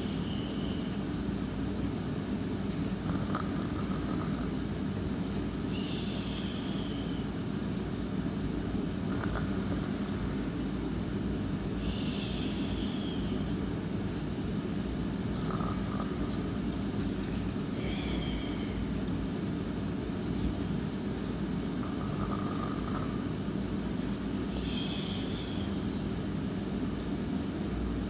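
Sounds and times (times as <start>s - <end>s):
person snoring: 3.0s - 4.6s, 9.0s - 10.2s, 15.3s - 16.6s, 21.8s - 23.4s.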